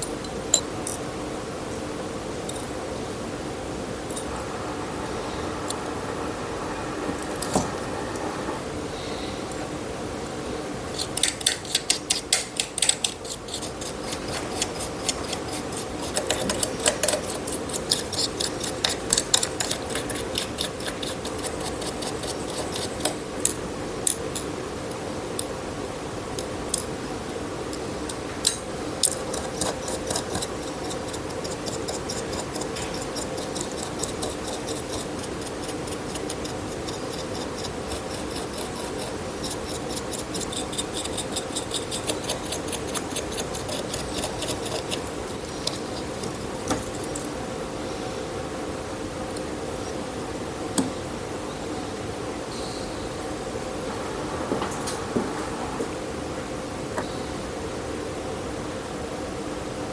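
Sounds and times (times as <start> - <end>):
low hum: 2.6 - 10.7.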